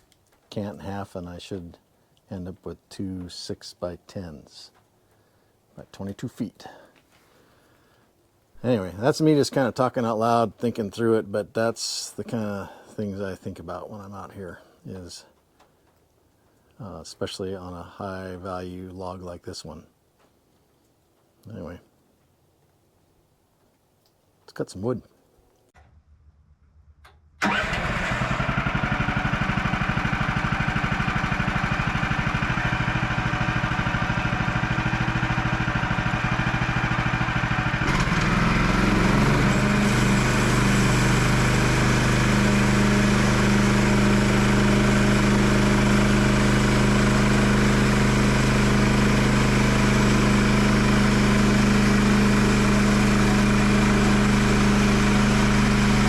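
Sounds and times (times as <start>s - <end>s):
sawmill gas engine running: 27.4s - 56.0s.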